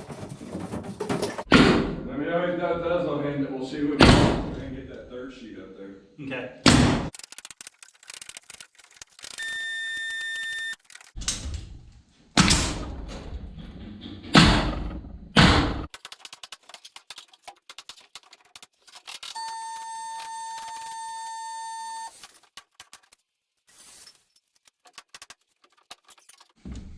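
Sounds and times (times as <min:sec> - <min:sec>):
scraping and rustling: 0:00.0 - 0:01.5, 0:22.0 - 0:26.6
loud knocks: 0:14.3 - 0:15.9.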